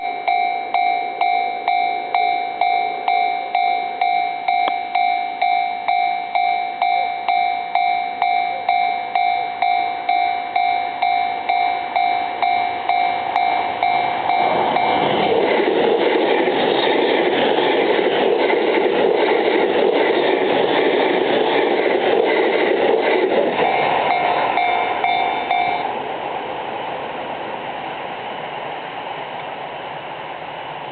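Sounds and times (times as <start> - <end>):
level crossing warning bell ringing: 0.0 - 15.5, 23.5 - 26.0
train wheels rushing on rails: 0.0 - 30.9.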